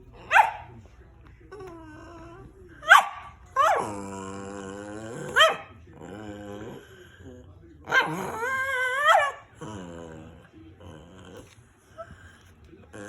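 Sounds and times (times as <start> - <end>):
dog barking: 0.2 - 0.8, 2.8 - 3.9, 5.3 - 5.7, 8.8 - 9.5
dog grumbling: 1.5 - 2.6, 3.5 - 12.3.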